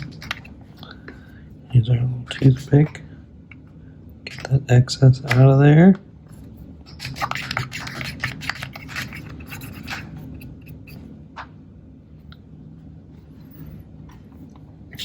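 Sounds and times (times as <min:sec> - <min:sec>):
toothpick scratching plastic: 0:00.0 - 0:00.5, 0:06.9 - 0:11.0.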